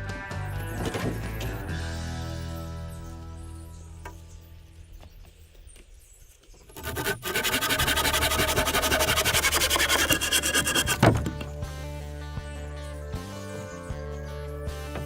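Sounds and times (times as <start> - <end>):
rough rasping scrape: 6.7 - 11.5.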